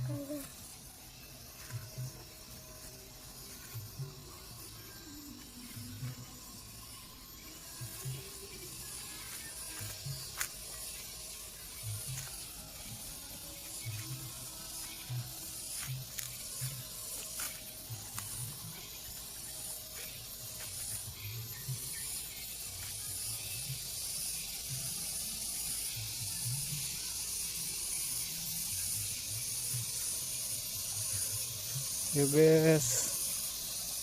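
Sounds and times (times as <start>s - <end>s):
high-pitched outdoor hiss: 0.0s - 34.0s.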